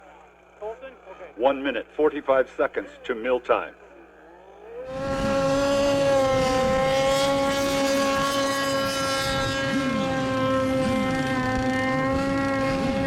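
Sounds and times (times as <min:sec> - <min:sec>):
boat engines rising and falling: 0:00.0 - 0:13.0
model boat engine whining: 0:03.0 - 0:13.0.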